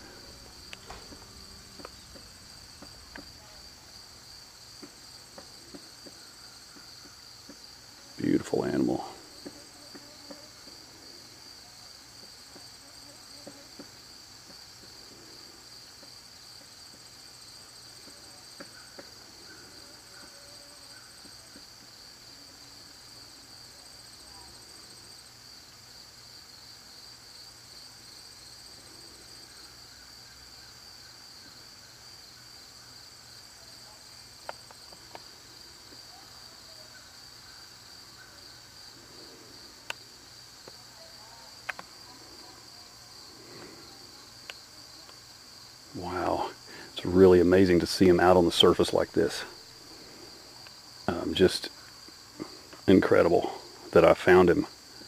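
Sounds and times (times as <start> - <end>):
insects trilling: 0.0 - 55.0
faint clicks: 41.6 - 41.9.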